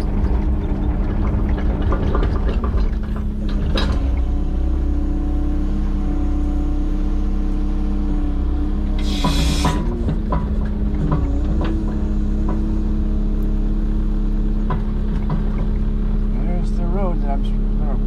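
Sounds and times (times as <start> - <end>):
knocks and clicks: 0.0 - 4.4, 9.2 - 12.9, 14.6 - 15.9
diesel engine idling: 0.0 - 18.0.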